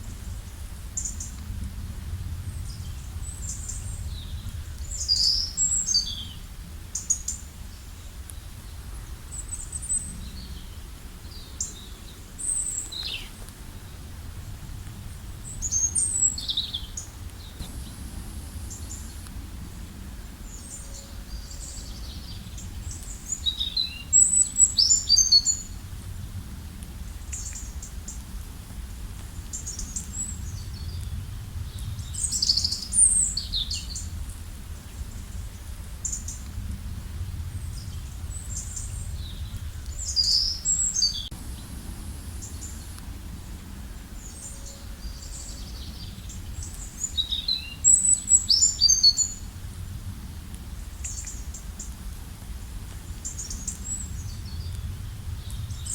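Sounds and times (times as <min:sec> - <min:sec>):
steady low rumble: 0:00.0 - 0:06.9, 0:08.5 - 0:25.0, 0:25.6 - 0:47.2, 0:49.3 - 0:55.9
songbird chirping and trilling: 0:02.7 - 0:14.0, 0:15.4 - 0:18.0, 0:18.6 - 0:25.8, 0:37.7 - 0:41.7, 0:42.4 - 0:49.5.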